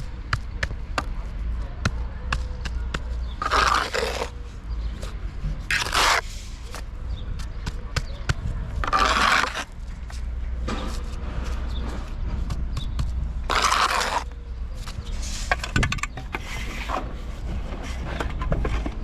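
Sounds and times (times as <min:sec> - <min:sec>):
scraping strokes: 0:03.2 - 0:07.0, 0:08.8 - 0:18.9.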